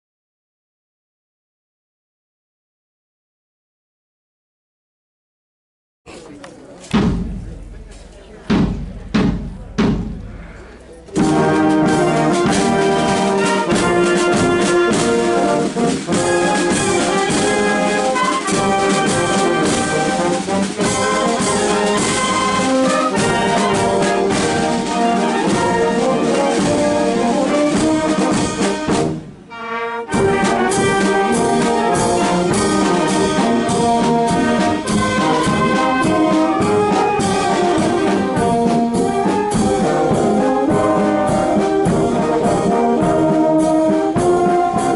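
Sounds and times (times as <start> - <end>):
trumpets and trombones: 10.0 - 44.9
wind band playing: 10.0 - 44.9.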